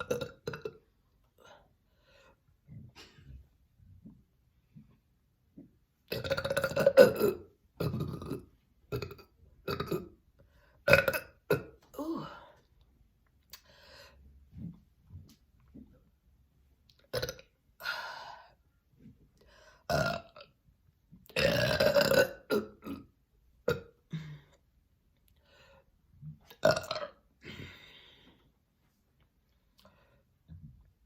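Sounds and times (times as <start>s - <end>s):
person burping: 0.0s - 0.9s, 6.1s - 10.2s, 10.8s - 12.6s, 17.0s - 18.0s, 19.9s - 20.6s, 21.2s - 24.6s, 26.4s - 27.8s.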